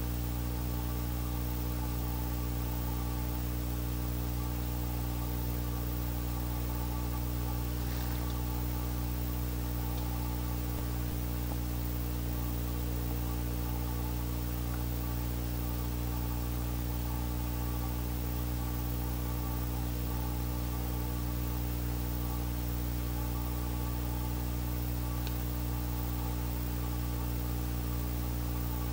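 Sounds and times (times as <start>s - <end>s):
constant hiss: 0.0s - 28.9s
electrical hum: 0.0s - 28.9s
faint clicks: 7.6s - 8.8s, 9.8s - 11.2s.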